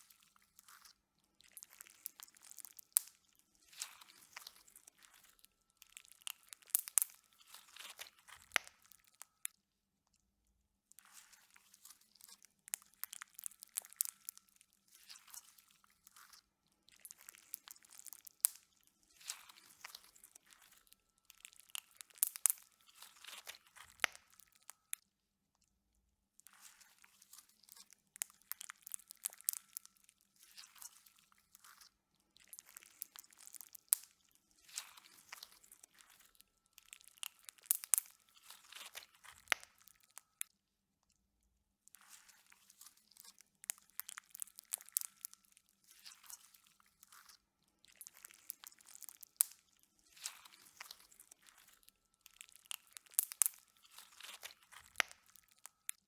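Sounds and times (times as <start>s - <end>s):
slime crackling and popping: 1.5s - 9.4s, 12.7s - 14.4s, 17.0s - 24.9s, 27.7s - 29.9s, 31.7s - 40.4s, 43.2s - 45.4s, 46.0s - 56.0s.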